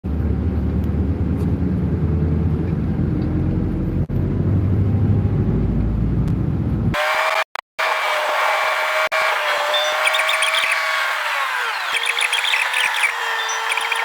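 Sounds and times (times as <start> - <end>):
bus engine and road noise: 0.0 - 7.0.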